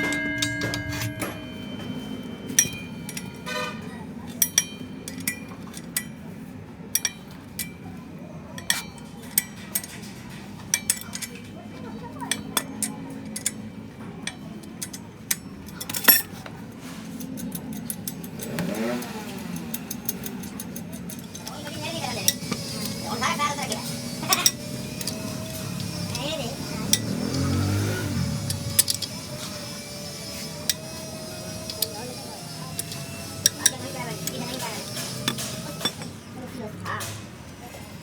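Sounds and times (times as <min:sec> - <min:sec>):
metal tools clinking and knocking: 0:00.0 - 0:38.0.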